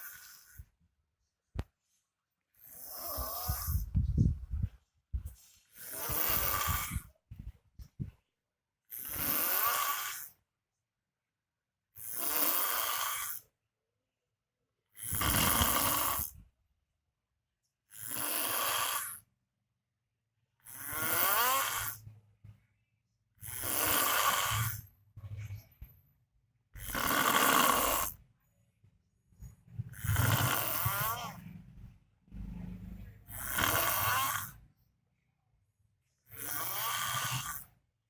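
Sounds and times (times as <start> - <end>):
person snoring loudly: 2.7 - 3.8, 5.8 - 7.1, 8.9 - 10.4, 12.0 - 13.4, 15.0 - 16.4, 17.9 - 19.2, 20.6 - 22.0, 23.4 - 24.8, 26.8 - 28.2, 29.9 - 31.4, 33.2 - 34.6, 36.3 - 37.7.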